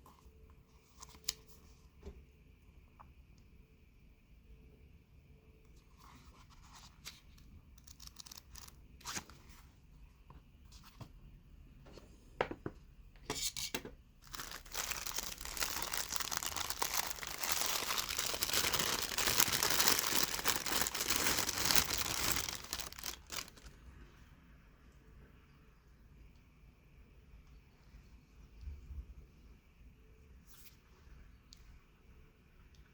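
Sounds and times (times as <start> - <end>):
packaging rustling and tearing: 7.8 - 9.3, 14.2 - 23.8.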